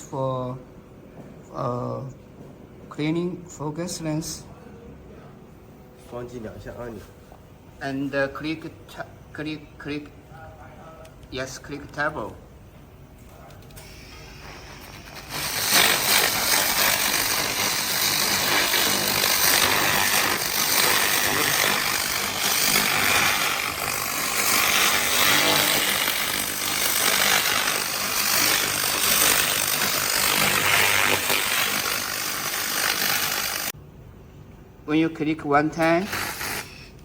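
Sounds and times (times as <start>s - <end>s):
laser cleaning gun crackling buzz: 13.8s - 33.7s.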